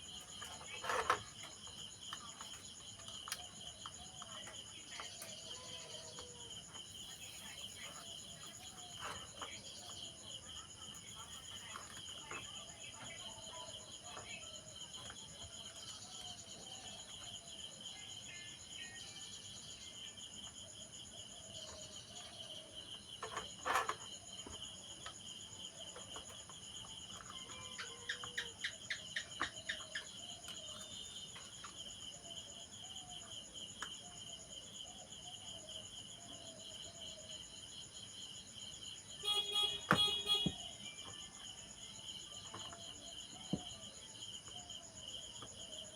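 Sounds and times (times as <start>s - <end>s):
insects chirring: 0.0s - 45.9s.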